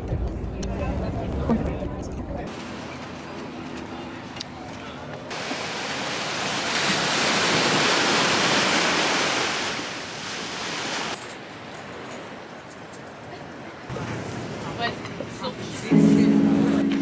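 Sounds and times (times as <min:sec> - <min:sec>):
ocean wave breaking: 0:05.3 - 0:11.3.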